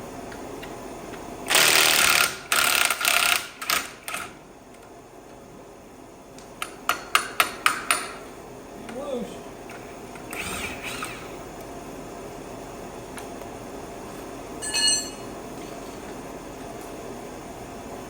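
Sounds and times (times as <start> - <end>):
power tool running: 1.4 - 3.9, 9.7 - 11.6.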